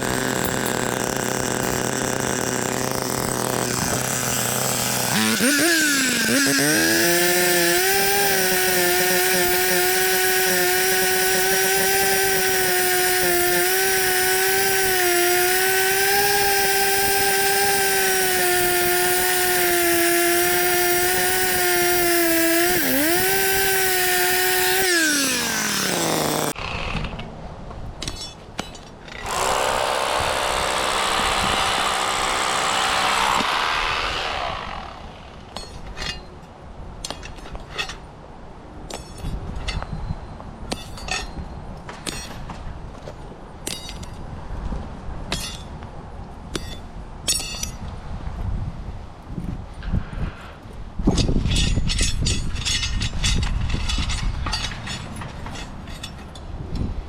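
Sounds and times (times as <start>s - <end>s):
power tool motor running: 0.0s - 26.8s, 29.2s - 35.5s.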